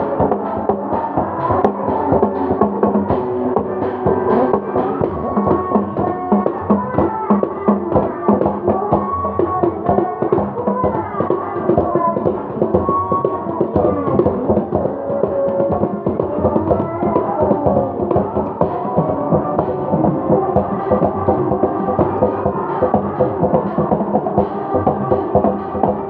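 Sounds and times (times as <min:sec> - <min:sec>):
music with percussive beat: 0:00.0 - 0:26.0.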